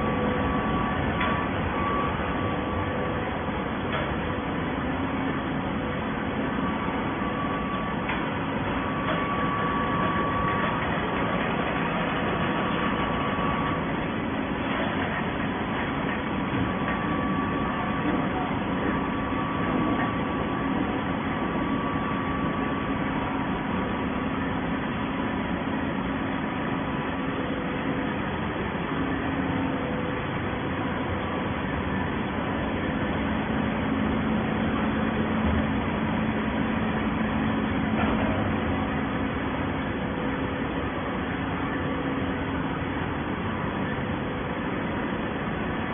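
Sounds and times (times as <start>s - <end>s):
baling machine humming: 0.0s - 45.9s.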